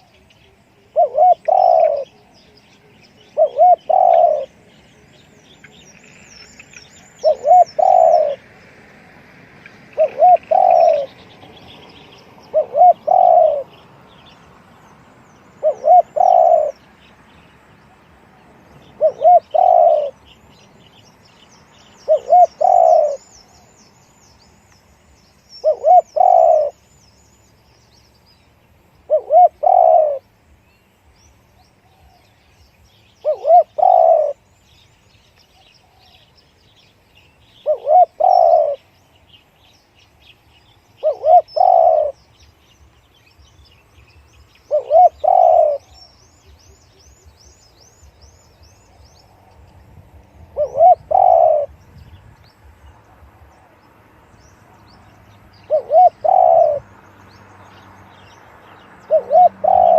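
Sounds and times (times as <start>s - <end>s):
dove cooing: 0.0s - 4.8s, 7.2s - 8.5s, 9.8s - 11.3s, 12.4s - 13.8s, 15.6s - 16.9s, 18.8s - 20.2s, 22.0s - 23.3s, 25.6s - 26.8s, 29.1s - 30.2s, 33.2s - 34.4s, 37.6s - 38.9s, 41.0s - 42.2s, 44.7s - 47.2s, 50.4s - 51.8s, 55.6s - 56.8s, 59.0s - 59.9s
small birds chirping: 0.0s - 59.9s.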